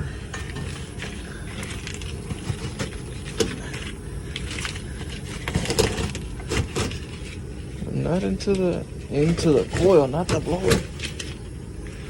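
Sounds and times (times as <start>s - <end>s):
air handler blower rumble: 0.0s - 12.0s
sharp knocks and scrapes: 0.3s - 7.4s.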